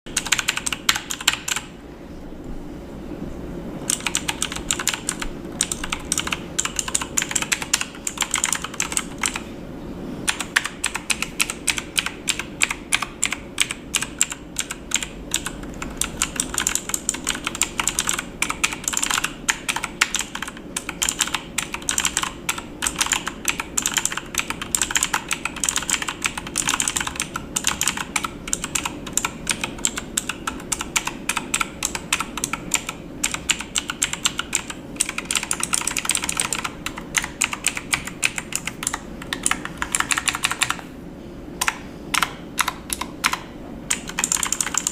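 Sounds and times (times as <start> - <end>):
fast typing on keyboard: 0.1 - 1.7, 3.9 - 9.4, 10.3 - 40.8, 41.6 - 44.9.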